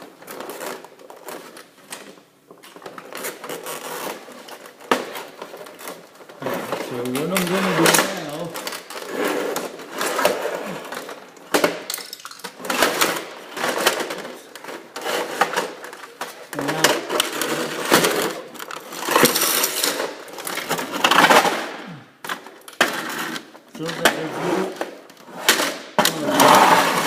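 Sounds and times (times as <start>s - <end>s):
printer parts clicking and rattling: 10.9s - 21.2s.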